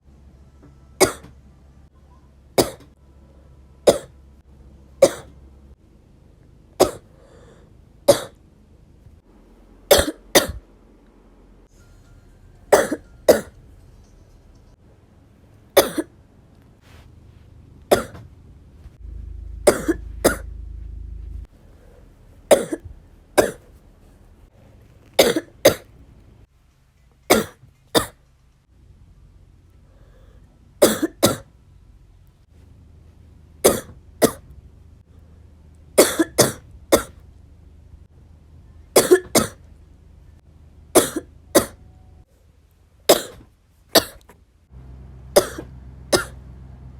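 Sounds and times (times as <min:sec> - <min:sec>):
person coughing: 0:01.0 - 0:01.3, 0:02.6 - 0:02.9, 0:05.0 - 0:05.3, 0:06.8 - 0:07.1, 0:09.9 - 0:10.6, 0:12.7 - 0:13.6, 0:15.8 - 0:16.1, 0:17.9 - 0:18.2, 0:19.6 - 0:20.5, 0:22.5 - 0:23.7, 0:30.8 - 0:31.5, 0:33.7 - 0:34.4, 0:36.0 - 0:37.2, 0:39.0 - 0:39.6, 0:41.0 - 0:41.8, 0:43.1 - 0:44.2, 0:45.4 - 0:46.4.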